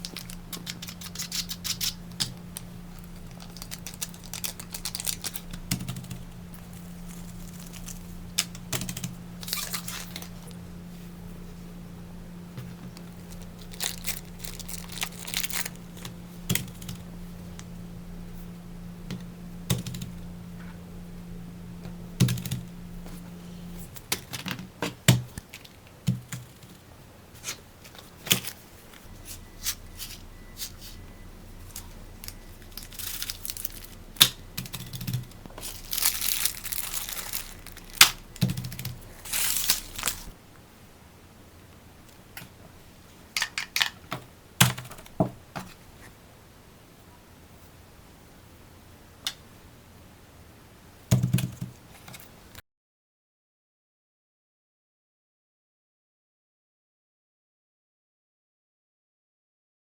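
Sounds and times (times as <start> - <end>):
plastic toys clicking and rustling: 0.0 - 2.4, 3.1 - 6.0, 13.3 - 15.8, 31.7 - 40.3, 43.4 - 44.0
steady low hum: 0.0 - 51.1.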